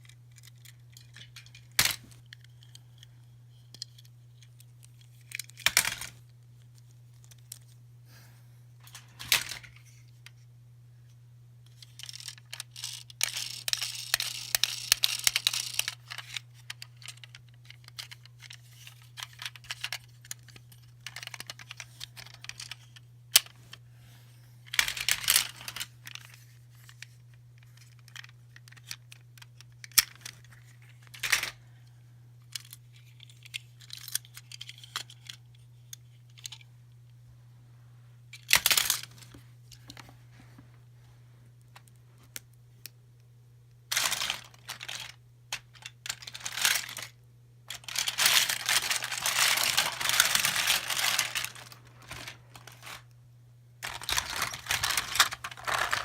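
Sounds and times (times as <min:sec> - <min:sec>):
steady low hum: 0:00.0 - 0:56.0
plastic toys clicking: 0:11.8 - 0:23.6, 0:43.9 - 0:47.1, 0:47.7 - 0:53.0, 0:53.8 - 0:56.0
packaging crinkling and tearing: 0:43.9 - 0:47.1, 0:47.7 - 0:53.1, 0:53.8 - 0:56.0.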